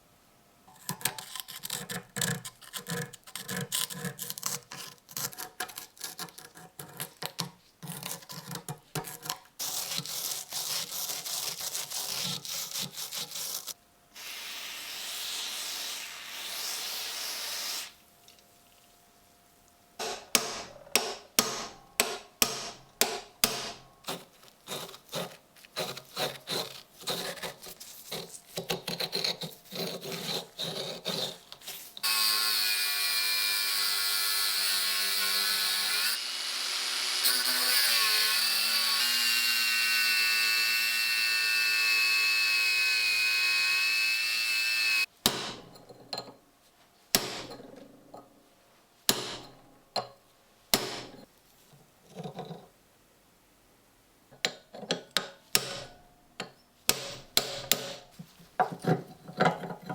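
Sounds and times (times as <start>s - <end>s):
sharp knocks on metal: 20.0s - 23.8s.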